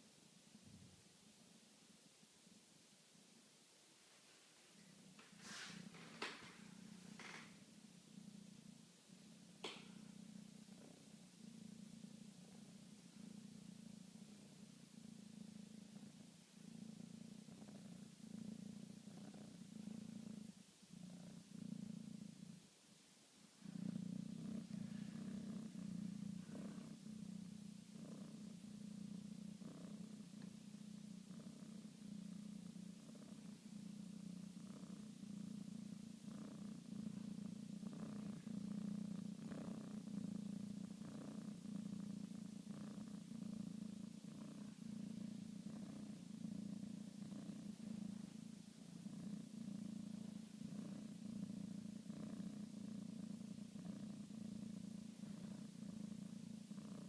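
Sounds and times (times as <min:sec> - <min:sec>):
cat snoring: 0:05.0 - 0:22.6, 0:23.6 - 0:57.0.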